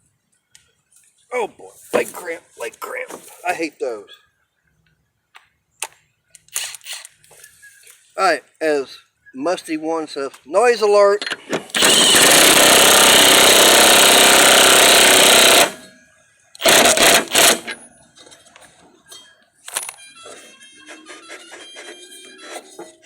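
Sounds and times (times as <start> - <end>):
impact wrench hammering: 11.7 - 16.0, 16.6 - 17.8.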